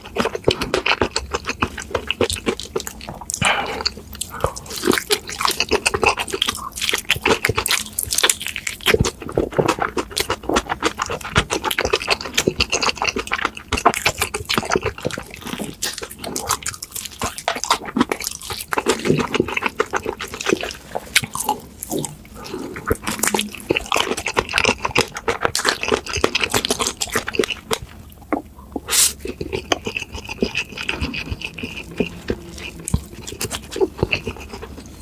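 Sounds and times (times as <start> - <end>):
wet chewing and smacking: 0.0 - 35.0.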